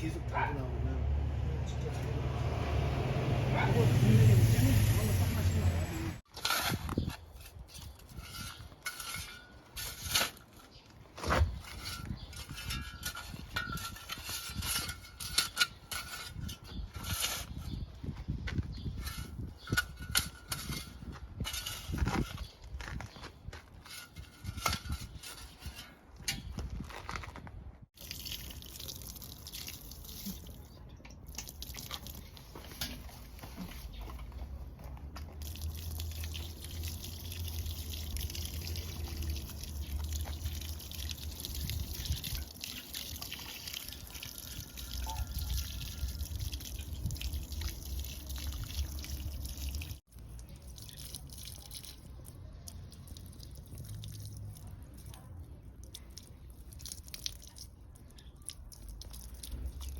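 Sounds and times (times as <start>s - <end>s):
water dripping: 28.0s - 32.6s, 35.4s - 55.0s, 55.8s - 59.9s.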